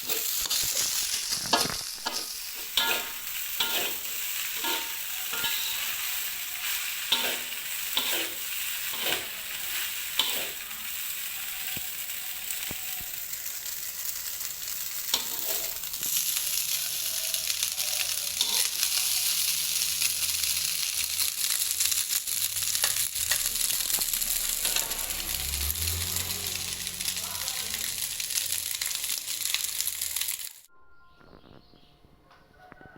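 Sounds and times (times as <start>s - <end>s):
rice sizzling in a pan: 0.0s - 30.7s
spatula striking a pan: 1.4s - 6.1s.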